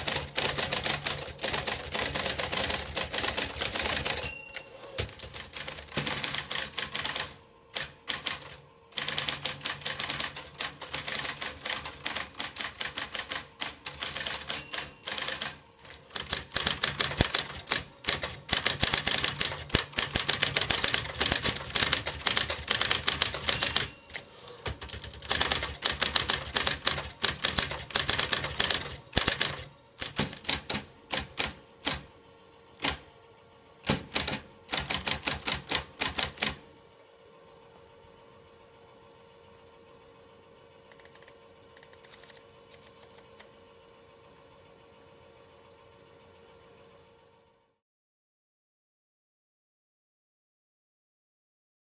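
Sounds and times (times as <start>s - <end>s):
electric typewriter typing: 0.0s - 32.1s, 32.8s - 33.1s, 33.8s - 36.6s, 40.9s - 43.5s.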